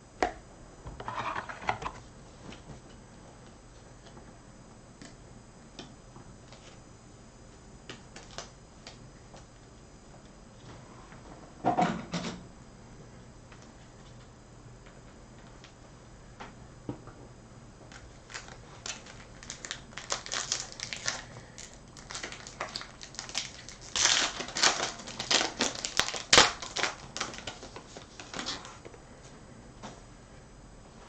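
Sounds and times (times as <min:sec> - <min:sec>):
wrapper crinkling and tearing: 0:17.9 - 0:28.8.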